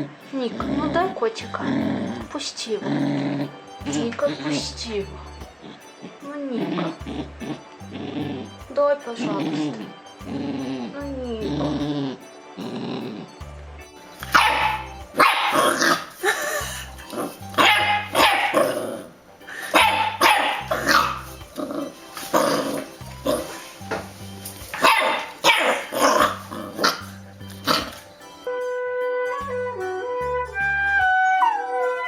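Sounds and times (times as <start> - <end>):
background music: 0.0 - 32.0
dog barking: 14.2 - 16.4, 17.1 - 21.3, 24.7 - 28.0.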